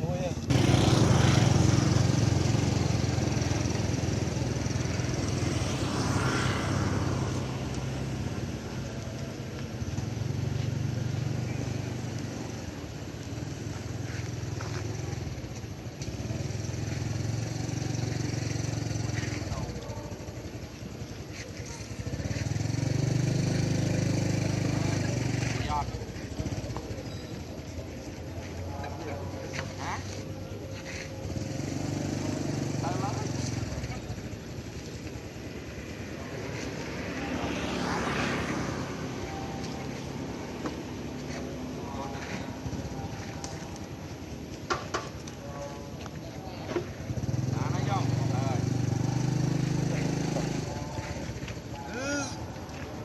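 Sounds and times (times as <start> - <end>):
small engine running: 0.3 - 53.0
aircraft engine passing overhead: 0.6 - 9.0, 32.8 - 40.6.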